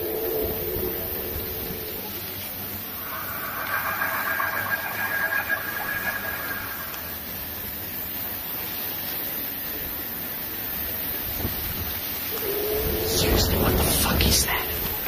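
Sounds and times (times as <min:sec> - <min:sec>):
wavering groaning tone: 0:00.0 - 0:07.8, 0:12.3 - 0:14.2
steady hiss: 0:00.0 - 0:15.0.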